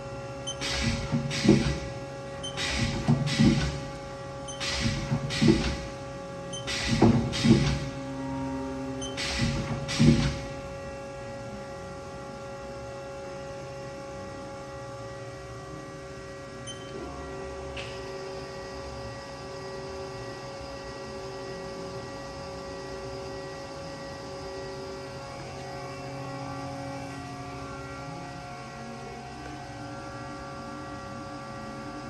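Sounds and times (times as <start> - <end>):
lathe machine hum: 0.0 - 12.2.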